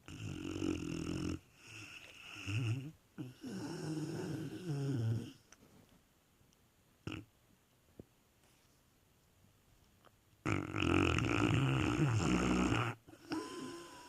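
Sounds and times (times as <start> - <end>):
dog snoring: 0.0 - 5.4, 10.4 - 14.0.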